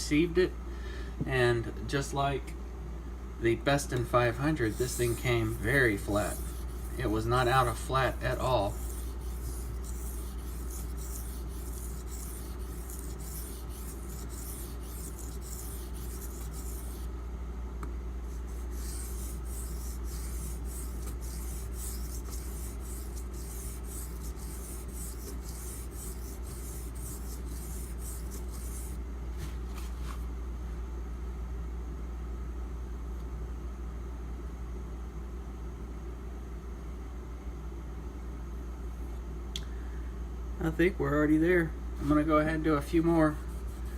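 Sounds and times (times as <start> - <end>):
knife scraping on whetstone: 4.2 - 17.1, 18.3 - 29.0.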